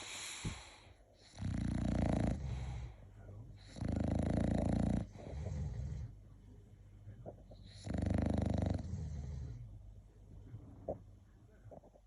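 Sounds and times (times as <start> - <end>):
dog breathing: 0.0 - 6.2
dog snoring: 1.2 - 3.0, 3.6 - 6.2, 7.6 - 9.7.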